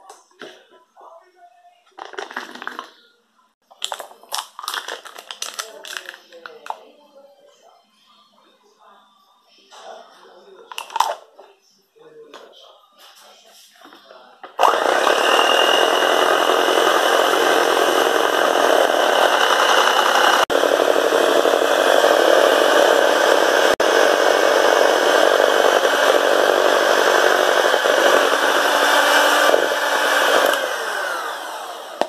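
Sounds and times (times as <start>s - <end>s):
electric hand mixer running: 14.6s - 32.0s.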